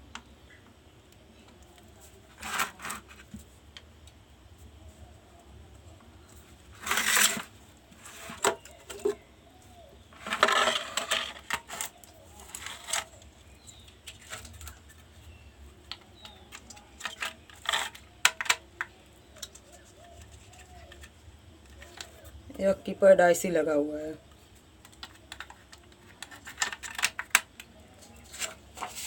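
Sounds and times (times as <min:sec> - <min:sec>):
plastic parts scraping: 0:02.3 - 0:03.5, 0:06.3 - 0:09.2, 0:10.1 - 0:22.5, 0:24.8 - 0:29.0.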